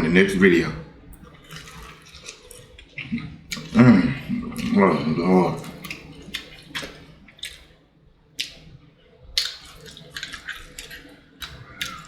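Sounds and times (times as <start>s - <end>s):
chewing fried chicken: 1.1s - 12.0s
wet crunches and smacks: 9.4s - 12.0s.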